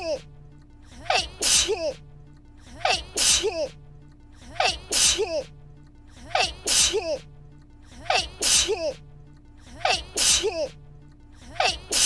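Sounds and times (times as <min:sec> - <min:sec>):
person sneezing: 0:01.1 - 0:02.0, 0:02.8 - 0:03.8, 0:04.6 - 0:05.5, 0:06.3 - 0:07.2, 0:08.1 - 0:09.0, 0:09.8 - 0:10.8, 0:11.6 - 0:12.0.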